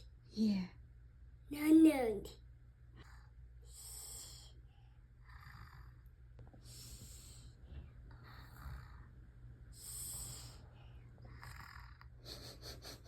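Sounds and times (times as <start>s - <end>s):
low steady hum: 0.0s - 13.0s
breathy snores: 5.2s - 6.1s, 8.1s - 12.2s.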